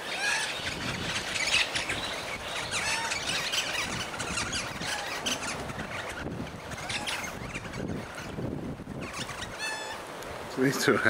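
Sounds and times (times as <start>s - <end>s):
birds chirping and calling: 0.0s - 10.2s.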